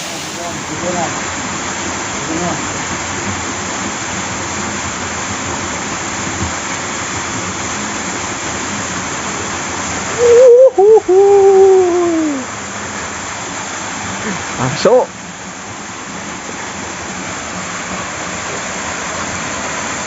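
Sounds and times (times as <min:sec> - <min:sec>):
flowing river water: 0:00.0 - 0:20.0
person calling out: 0:10.2 - 0:12.5.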